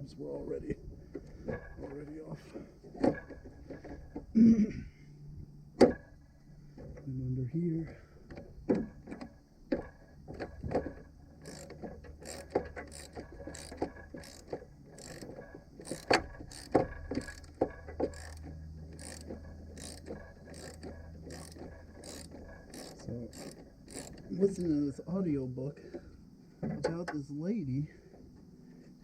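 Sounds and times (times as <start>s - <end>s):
ratchet wrench clicking: 11.4s - 24.7s.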